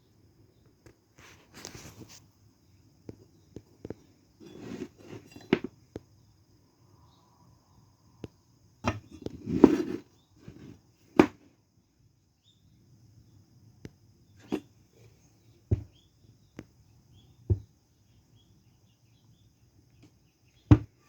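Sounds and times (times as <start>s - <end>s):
knocks and clatter of handling: 3.9s - 5.8s.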